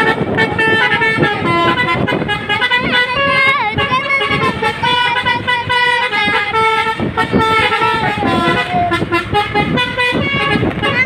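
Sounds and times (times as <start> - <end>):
musical air horn tune: 0.0 - 11.0.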